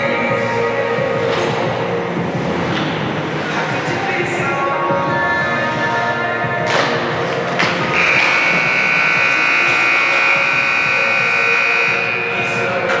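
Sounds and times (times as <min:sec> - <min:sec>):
music: 0:00.0 - 0:13.0
scoreboard buzzer blast: 0:07.9 - 0:12.6.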